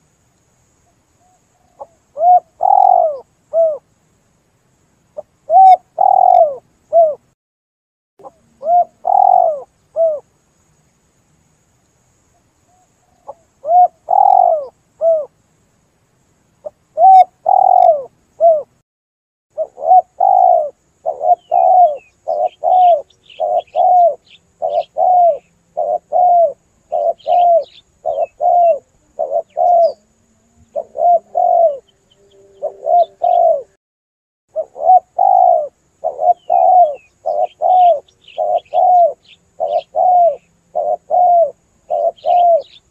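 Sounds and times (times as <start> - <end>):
small birds chirping: 0.8 - 4.4, 5.0 - 7.4, 8.2 - 11.1, 11.8 - 15.8, 16.6 - 18.8, 19.6 - 33.8, 34.5 - 42.9
dove cooing: 1.6 - 3.8, 5.2 - 7.2, 8.2 - 10.3, 13.2 - 15.3, 16.6 - 18.8, 19.6 - 33.8, 34.5 - 42.8.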